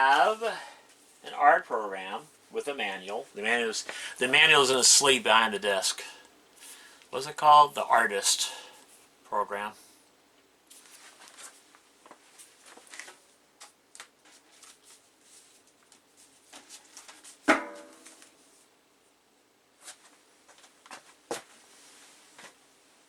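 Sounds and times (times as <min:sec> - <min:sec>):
paper and plastic rustling: 0:10.7 - 0:17.4.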